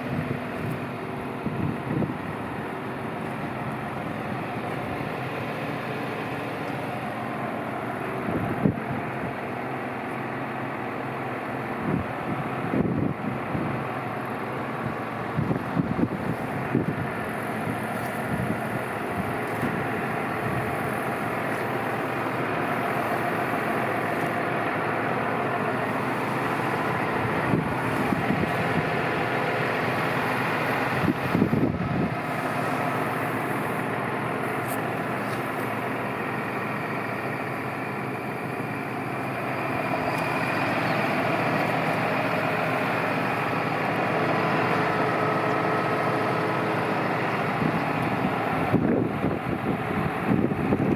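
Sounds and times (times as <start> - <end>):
tractor engine running: 0.0 - 50.9
wind buffeting microphone: 0.1 - 2.6, 11.8 - 13.9, 14.9 - 21.0, 25.9 - 32.6, 47.4 - 50.9.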